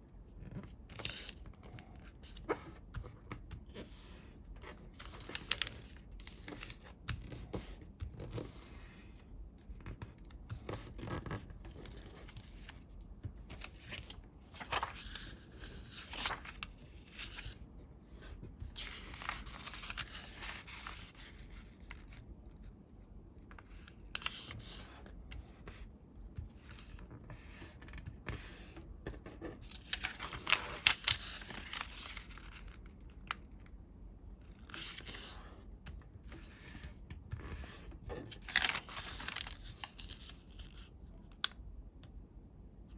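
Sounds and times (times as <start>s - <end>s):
paper rustling and crinkling: 0.4s - 8.8s, 10.0s - 22.2s, 29.2s - 33.5s, 34.5s - 35.6s, 36.2s - 41.6s.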